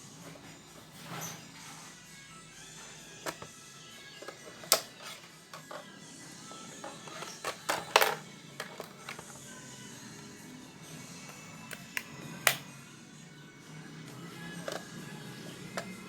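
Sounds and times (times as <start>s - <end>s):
quiet background music: 0.0s - 16.0s.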